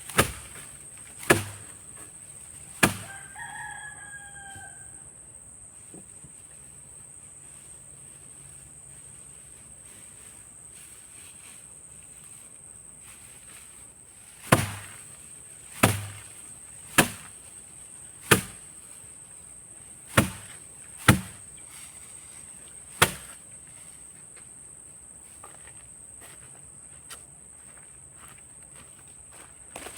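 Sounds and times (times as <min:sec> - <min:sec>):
sharp chopping strikes: 0:00.1 - 0:01.8, 0:02.8 - 0:03.1, 0:14.4 - 0:15.0, 0:15.7 - 0:16.3, 0:16.9 - 0:17.4, 0:18.2 - 0:18.6, 0:20.1 - 0:21.5, 0:23.0 - 0:23.4.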